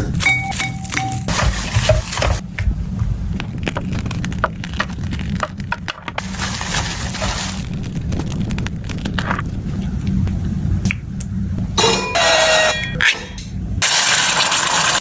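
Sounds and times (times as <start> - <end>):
low rumble: 1.3 - 11.8
slime crackling and popping: 3.3 - 9.8.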